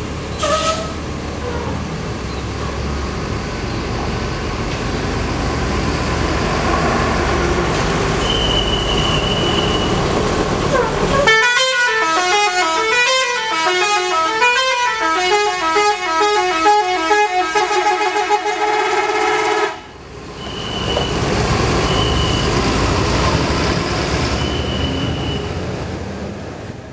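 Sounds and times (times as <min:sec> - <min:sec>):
vehicle engine noise: 0:00.0 - 0:12.1
musical horn playing a tune: 0:00.4 - 0:01.0, 0:10.7 - 0:19.8.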